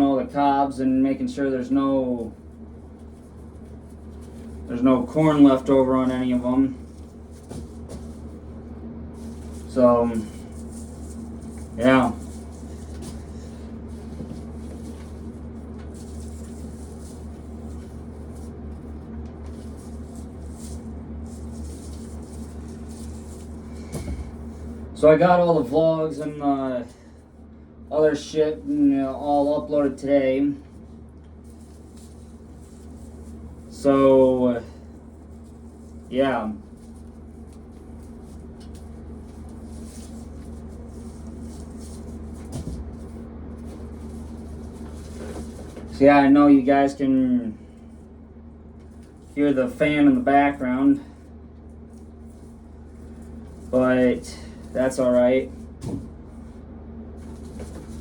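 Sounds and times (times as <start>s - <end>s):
electric fan humming: 0.0s - 58.0s
dry corn cobs rustling: 2.9s - 24.8s, 31.4s - 46.3s, 52.0s - 56.6s
faint rustling: 28.5s - 47.0s, 47.6s - 58.0s.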